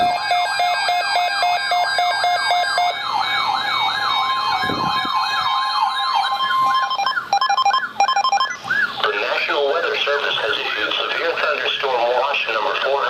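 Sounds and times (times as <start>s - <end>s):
pulsing electronic beeps: 0.0s - 3.0s, 6.2s - 8.8s
electronic siren yelping: 0.0s - 11.3s.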